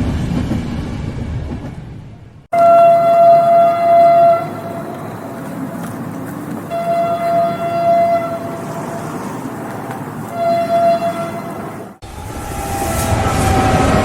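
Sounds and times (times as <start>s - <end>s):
running train rumble: 0.0s - 14.0s
train horn blasts: 2.5s - 5.0s, 6.7s - 9.3s, 10.3s - 14.0s.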